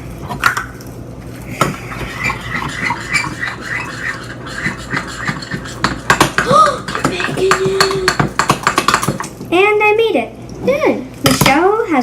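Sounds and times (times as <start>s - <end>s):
utensil stirring in a bowl: 1.4s - 9.5s.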